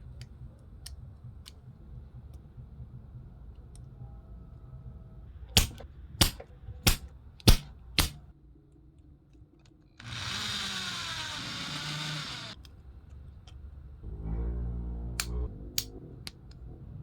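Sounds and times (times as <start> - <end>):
sharp clicks: 5.6 - 8.2
whirring hiss with falling tones: 10.0 - 12.6.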